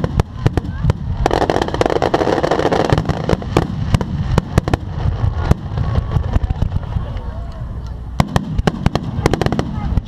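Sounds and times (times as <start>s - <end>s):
fireworks bangs: 0.0s - 10.0s
fireworks crackling hiss: 0.0s - 10.0s.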